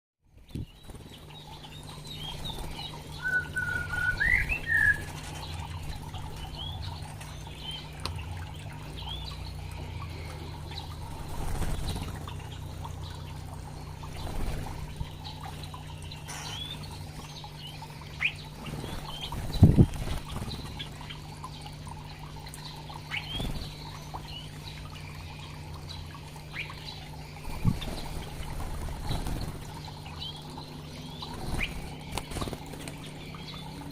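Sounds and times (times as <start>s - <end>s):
wings fluttering: 0.3s - 9.0s, 9.7s - 24.7s, 26.4s - 33.9s
songbirds chirping: 0.3s - 33.9s
steady low hum: 0.3s - 33.9s.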